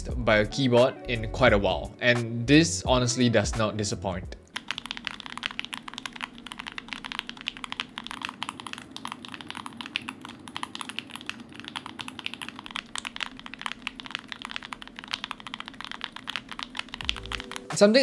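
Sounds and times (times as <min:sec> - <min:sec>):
mechanical keyboard typing: 0:04.5 - 0:18.0.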